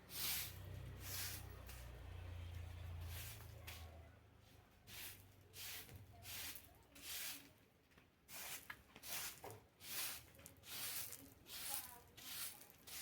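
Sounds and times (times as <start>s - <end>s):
floor scrubbing swishes: 0.0s - 2.0s.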